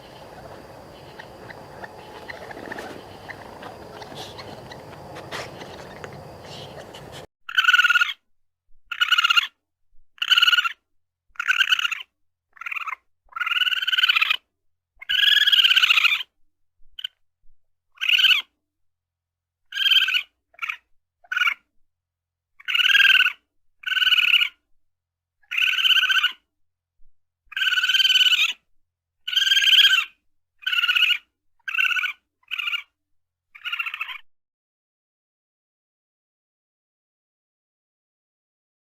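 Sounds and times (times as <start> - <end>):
raccoon quavering cries: 0.0 - 8.2, 27.5 - 28.6, 29.3 - 32.9, 33.6 - 34.2.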